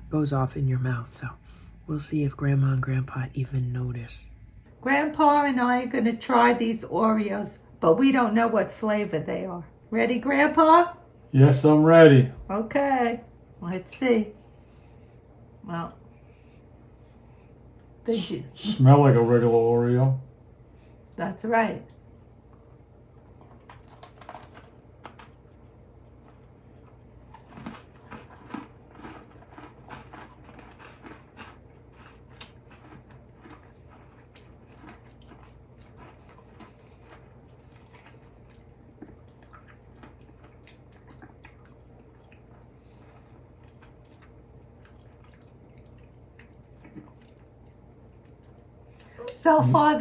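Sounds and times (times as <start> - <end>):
low hum: 0.0 - 11.2
people chewing crunchy cookies: 22.5 - 50.0.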